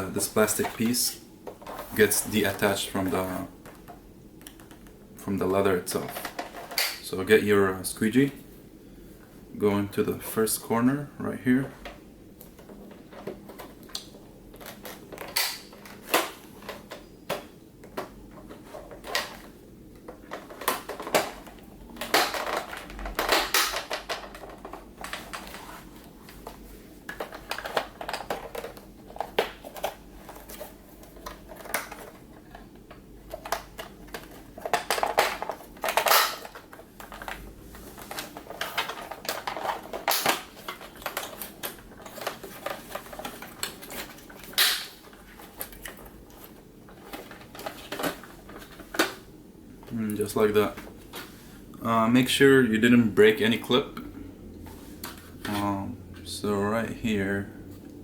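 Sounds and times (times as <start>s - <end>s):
scraping and creaking plastic: 12.6s - 49.2s
plastic clips popping and clicking: 22.0s - 25.3s.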